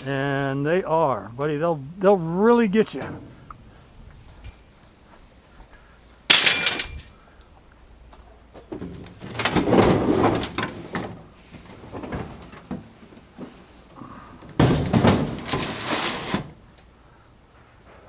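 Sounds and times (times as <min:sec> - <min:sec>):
loud metal clatter: 0:06.3 - 0:07.1.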